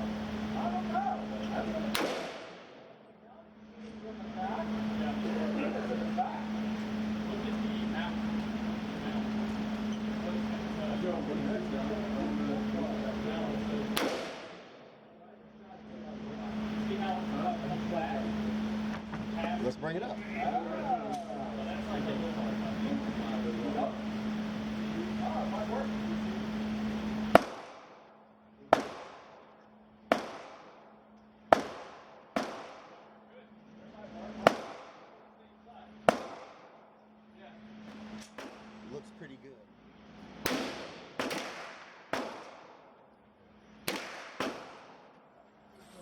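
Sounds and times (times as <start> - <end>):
mechanical hum: 0.0 - 46.0
carbine gunshots with echo: 1.8 - 2.9, 13.9 - 15.0, 27.2 - 33.2, 34.3 - 35.4, 36.0 - 37.0, 38.2 - 38.8, 40.4 - 43.0, 43.8 - 45.1.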